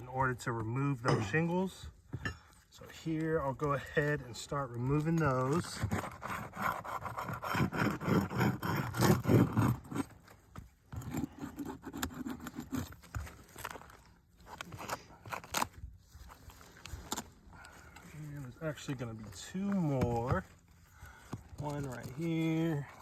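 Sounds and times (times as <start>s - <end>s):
tool scraping roof shingles: 4.7s - 15.8s.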